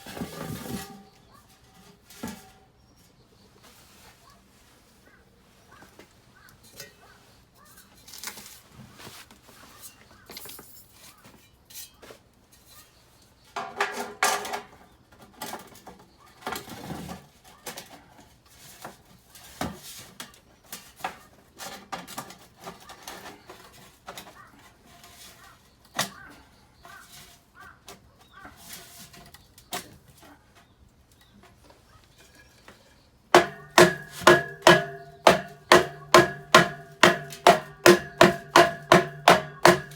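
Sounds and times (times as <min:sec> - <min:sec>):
hard strikes on ringing metal: 0:33.4 - 0:39.9
knocks and clanks: 0:33.4 - 0:39.9
ringing metal clang: 0:33.4 - 0:39.9.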